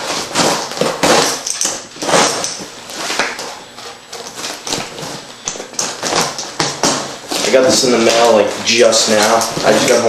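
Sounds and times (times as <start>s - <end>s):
packaging rustling and scraping: 0.0s - 10.0s.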